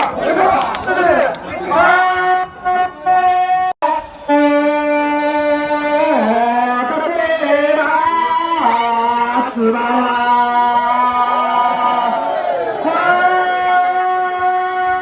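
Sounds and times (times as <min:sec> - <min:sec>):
voices singing long held notes: 0:01.7 - 0:15.0.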